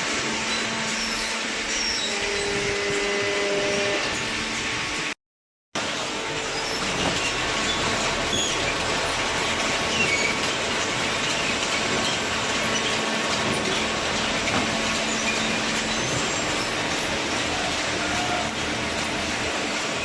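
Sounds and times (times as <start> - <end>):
short high squeaks: 0.5 - 4.3
machinery running: 5.8 - 20.0.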